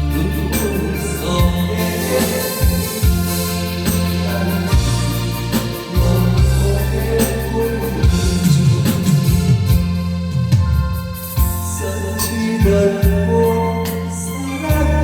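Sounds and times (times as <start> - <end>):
drum beat: 0.0 - 11.8
bass line: 0.0 - 15.0
organ-like keyboard chords: 0.0 - 15.0.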